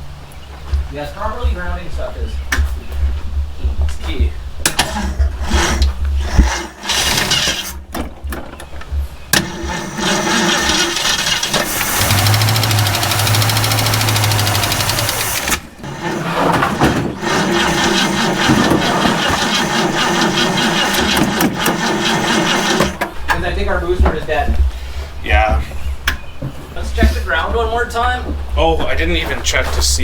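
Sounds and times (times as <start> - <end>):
starter cranking engine: 6.2 - 7.8, 9.4 - 23.1.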